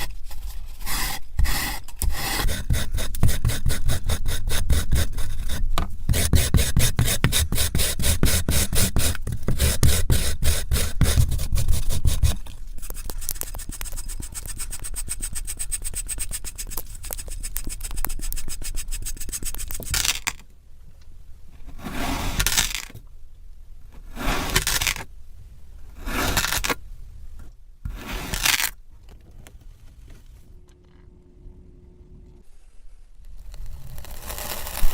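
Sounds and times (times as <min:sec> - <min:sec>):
kinetic sand being scraped: 0:06.2 - 0:20.3, 0:21.8 - 0:22.9, 0:24.1 - 0:25.0, 0:26.0 - 0:26.8, 0:27.9 - 0:28.7, 0:33.5 - 0:34.9.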